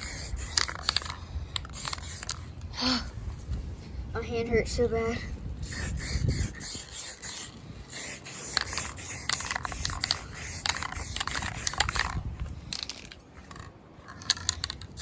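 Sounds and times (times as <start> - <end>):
spray can hissing: 0.0 - 2.5, 5.6 - 12.2.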